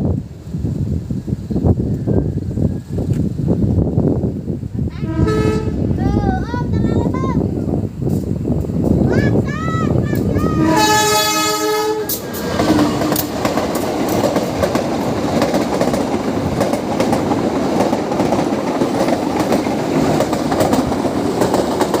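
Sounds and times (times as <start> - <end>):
train rushing past: 0.0 - 22.0
train horn: 5.0 - 5.9, 10.5 - 13.3
wheels clacking over rail joints: 12.0 - 22.0.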